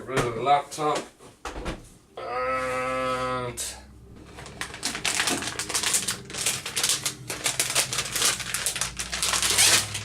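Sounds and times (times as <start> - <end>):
packaging rustling: 4.2 - 10.0.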